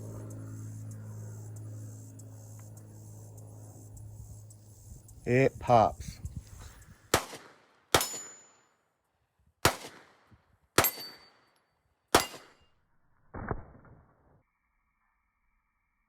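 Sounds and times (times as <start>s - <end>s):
pistol shots: 7.1s - 8.6s, 9.6s - 10.2s, 10.8s - 11.4s, 12.1s - 12.6s.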